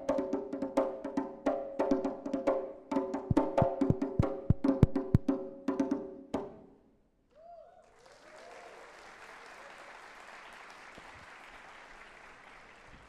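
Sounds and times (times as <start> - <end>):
audience applauding: 7.8 - 13.0.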